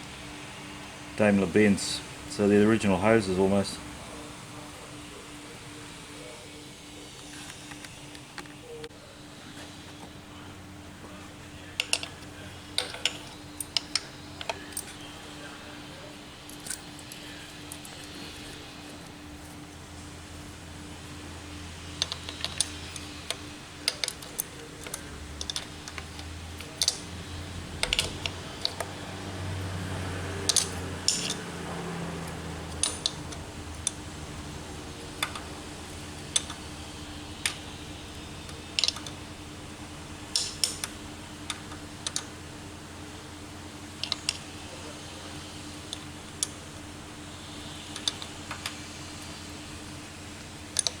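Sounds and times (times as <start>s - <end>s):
steady low hum: 0.0s - 51.0s
metallic clicks of hand tools: 22.0s - 27.1s, 27.8s - 28.9s, 30.5s - 31.6s, 35.0s - 35.5s, 38.5s - 39.2s, 50.8s - 51.0s.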